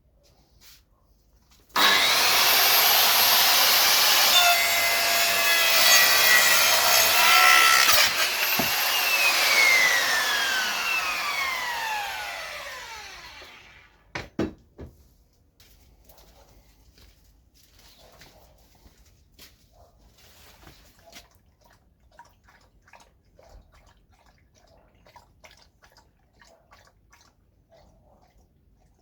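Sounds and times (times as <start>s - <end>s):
electric power tool whining: 1.8s - 14.0s.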